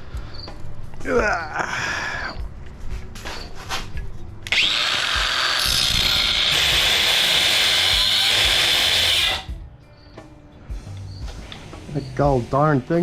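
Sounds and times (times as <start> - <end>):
angle grinder cutting metal pipe: 4.5 - 9.6.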